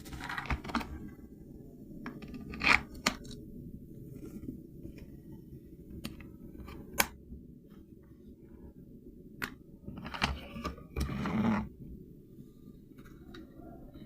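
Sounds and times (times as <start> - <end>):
rustling scrape: 0.0 - 1.0
steady low hum: 0.0 - 14.0.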